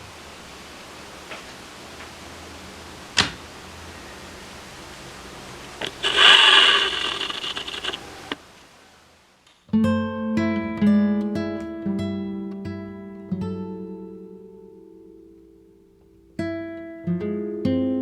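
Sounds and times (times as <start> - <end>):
loud rustling: 5.1 - 8.4
acoustic guitar music: 5.7 - 8.4, 9.7 - 18.0.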